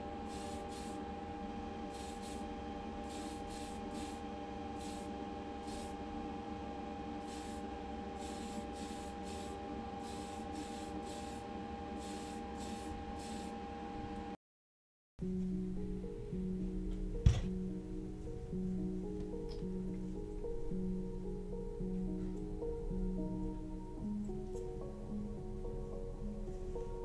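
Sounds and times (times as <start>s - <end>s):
paint spray hissing: 0.3s - 1.0s, 1.9s - 2.4s, 3.0s - 4.2s, 4.8s - 6.0s, 7.2s - 7.6s, 8.2s - 11.4s, 12.0s - 13.5s.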